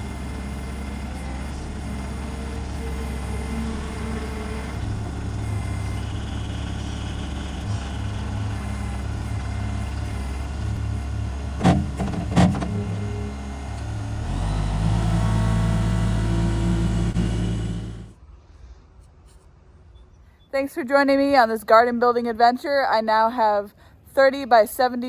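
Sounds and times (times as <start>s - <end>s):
tractor diesel engine running: 0.0s - 18.2s
sharp knocks: 11.6s - 12.8s.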